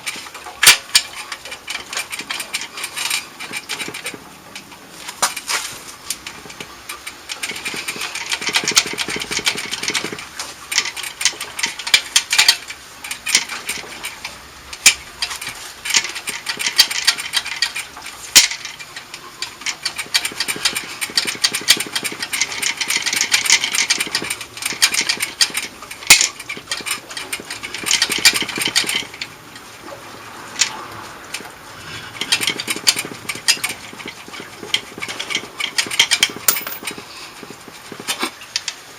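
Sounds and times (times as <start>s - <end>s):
sharp clicks and knocks: 32.4s - 37.0s.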